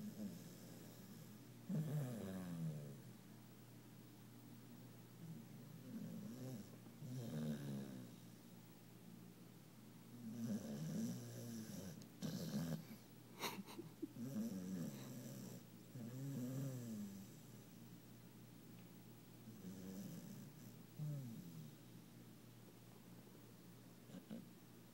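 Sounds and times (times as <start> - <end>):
puppy snoring: 0.0 - 3.1, 5.7 - 8.4, 10.2 - 17.6, 19.5 - 21.8, 24.1 - 24.5.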